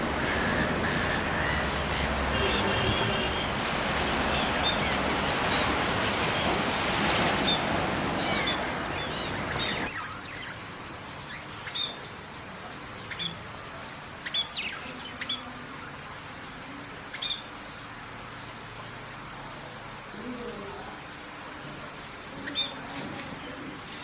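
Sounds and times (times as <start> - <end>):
steady rushing noise: 0.0 - 11.2
small birds chirping: 0.0 - 18.8, 22.2 - 23.7.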